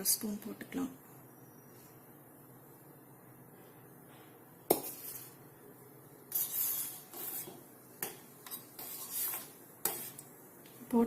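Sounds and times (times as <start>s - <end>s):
spoon scraping rustles: 4.7s - 5.5s, 6.2s - 10.4s.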